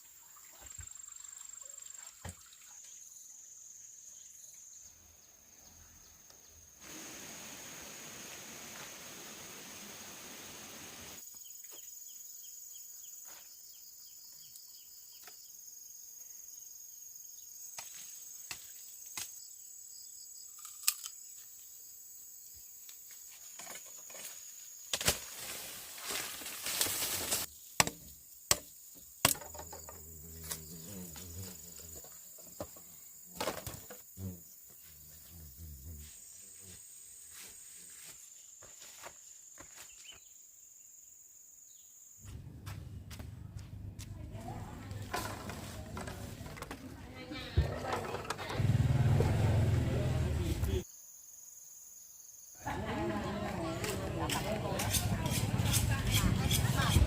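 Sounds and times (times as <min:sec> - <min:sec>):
high-pitched insect chirring: 0:29.4 - 0:32.2.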